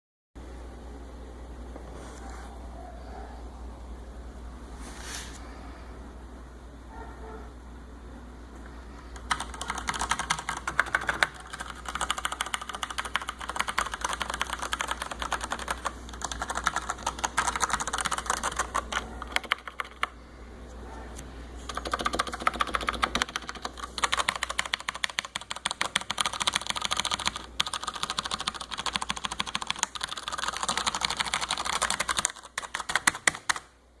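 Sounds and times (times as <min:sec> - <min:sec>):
typing on mechanical keyboard: 0:09.2 - 0:20.2, 0:21.7 - 0:33.7.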